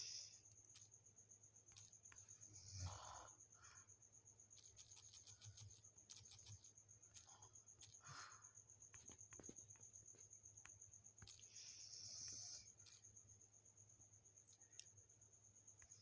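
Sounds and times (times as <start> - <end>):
faint high-pitched whine: 0.0 - 16.0
faint clicks: 4.5 - 8.3, 8.9 - 13.1, 14.4 - 15.0.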